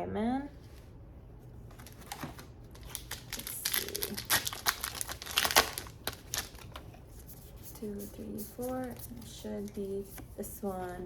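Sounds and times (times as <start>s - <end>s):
plastic wrapper crinkling and tearing: 1.7s - 6.8s.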